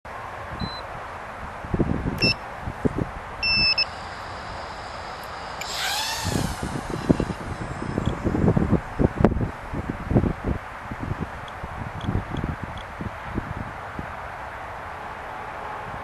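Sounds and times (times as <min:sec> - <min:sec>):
wind buffeting microphone: 0:01.4 - 0:04.8, 0:05.4 - 0:14.4
buzzer beeps: 0:03.4 - 0:04.0
drone motors whining: 0:03.4 - 0:09.3.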